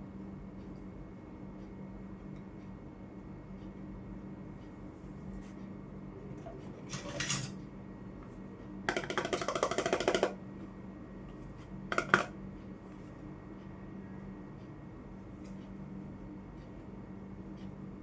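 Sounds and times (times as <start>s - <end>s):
toy kitchenware clattering: 6.9s - 7.6s.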